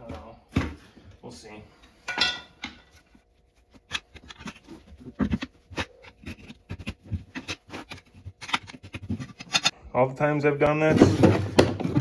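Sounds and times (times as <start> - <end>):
tire handled on workbench: 10.8 - 12.0.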